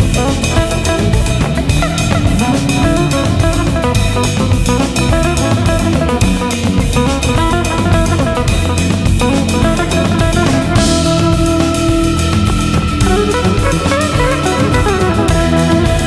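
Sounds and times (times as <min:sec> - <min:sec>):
instrumental rock music: 0:00.0 - 0:16.0.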